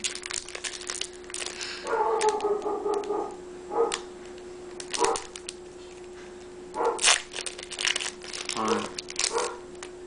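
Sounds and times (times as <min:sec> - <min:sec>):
foil pack crinkling: 0:00.0 - 0:03.1, 0:04.8 - 0:05.6, 0:06.8 - 0:10.0.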